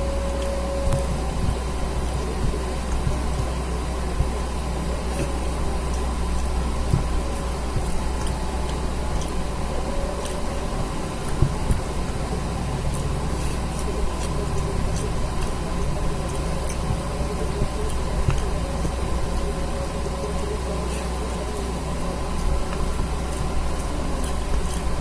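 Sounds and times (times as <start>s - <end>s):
eating mouth sounds: 0.0s - 25.0s
low mechanical hum: 0.0s - 25.0s.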